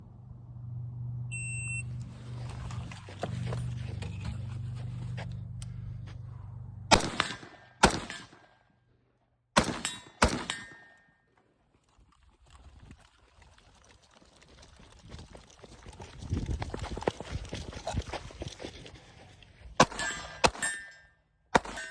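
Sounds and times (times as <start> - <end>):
steady low hum: 0.0 - 9.1
faint ringing tone: 1.1 - 2.1
gunshots with echo: 6.9 - 8.6, 9.6 - 10.9, 21.6 - 21.9.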